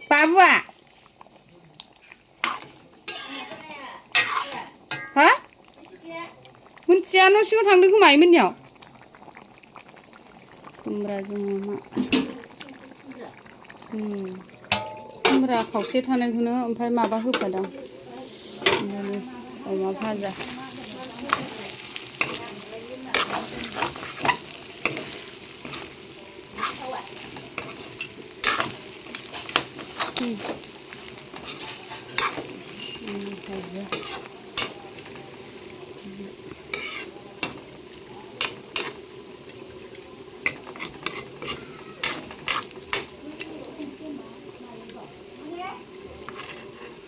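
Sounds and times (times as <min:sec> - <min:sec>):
food sizzling in a pan: 0:00.0 - 0:47.0
metal spatula knocking pan: 0:03.1 - 0:05.3, 0:14.7 - 0:16.0, 0:17.0 - 0:17.8.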